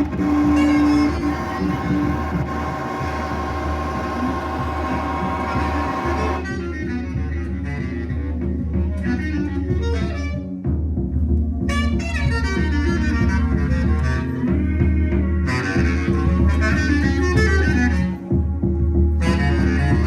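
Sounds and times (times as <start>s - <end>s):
hazy held tones: 0.0s - 6.4s
lead instrument pitched notes: 0.0s - 6.4s
low bass line: 0.0s - 6.9s.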